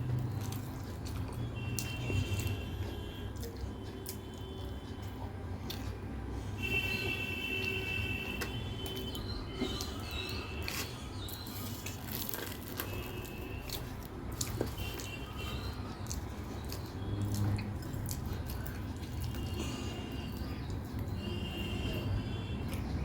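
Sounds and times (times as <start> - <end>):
chewing: 0.0 - 6.2, 6.8 - 21.3.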